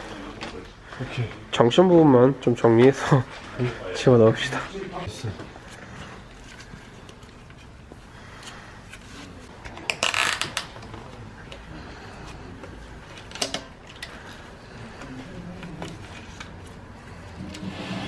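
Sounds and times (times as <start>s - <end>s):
tools clicking and knocking: 13.2s - 14.1s.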